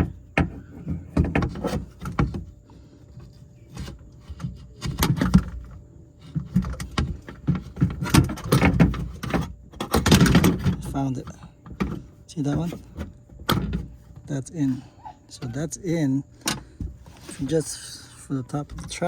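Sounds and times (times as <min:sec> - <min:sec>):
metal clunks and rattles: 0:00.0 - 0:14.4, 0:18.5 - 0:19.0.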